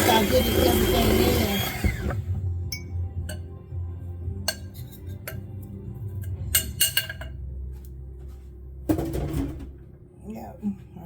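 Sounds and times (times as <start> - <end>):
utensils clinking against bowl: 4.5 - 5.5, 6.1 - 7.4.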